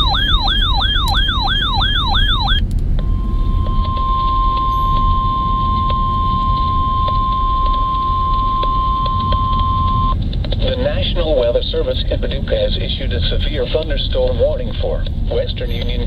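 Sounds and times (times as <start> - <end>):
siren warbling: 0.0 - 10.2
steady alarm tone: 0.0 - 10.2.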